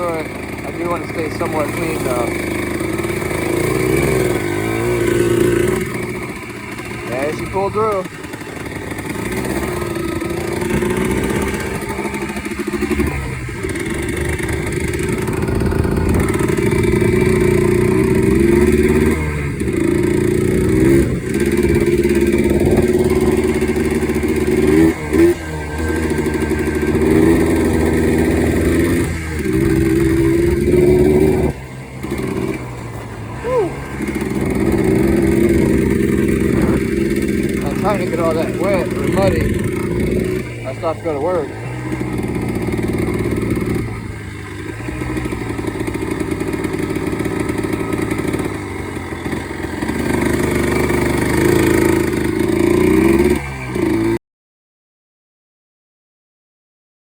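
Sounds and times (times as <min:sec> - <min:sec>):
quad engine revving under load: 0:00.0 - 0:54.2.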